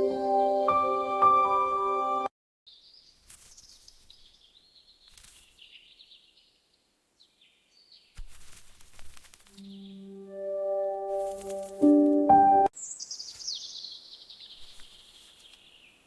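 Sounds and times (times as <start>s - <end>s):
ambient music with bell-like tones: 0.0s - 2.3s, 9.6s - 12.7s
faint birdsong chirps: 2.7s - 8.2s, 12.8s - 16.0s
rustling: 3.1s - 5.9s, 8.1s - 9.6s, 11.1s - 12.2s, 14.4s - 16.0s.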